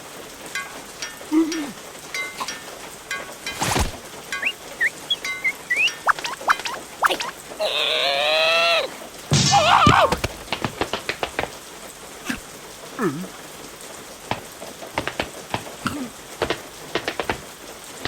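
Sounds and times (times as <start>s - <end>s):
small falling squeak: 3.5s - 7.4s
cartoon voice squeak: 4.4s - 8.9s.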